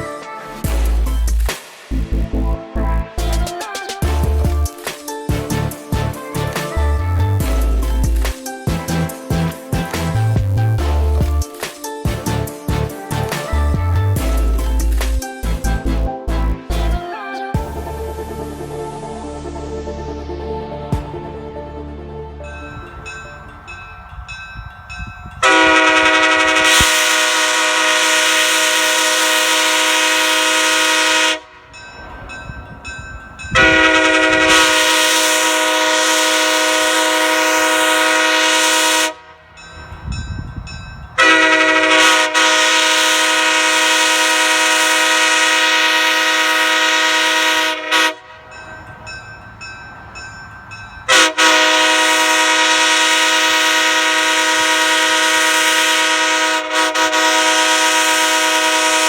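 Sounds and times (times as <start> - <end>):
locomotive air horn blasts: 0.0 - 1.4, 2.9 - 11.4, 14.2 - 17.8, 25.4 - 31.7, 33.6 - 39.5, 41.2 - 48.4, 51.1 - 59.0.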